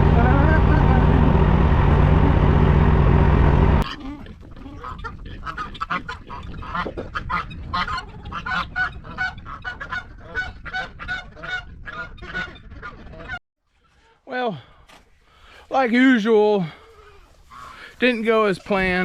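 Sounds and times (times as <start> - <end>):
geese honking: 17.5 - 18.5.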